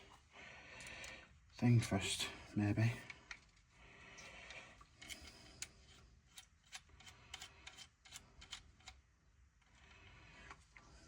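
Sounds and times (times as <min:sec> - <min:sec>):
small metal parts clicking: 0:05.0 - 0:09.0.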